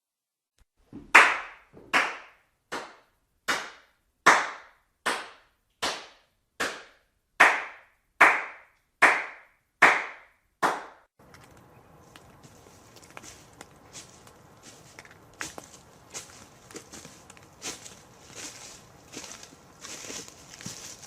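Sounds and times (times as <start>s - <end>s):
sharp clap-like strikes: 1.1s - 11.1s.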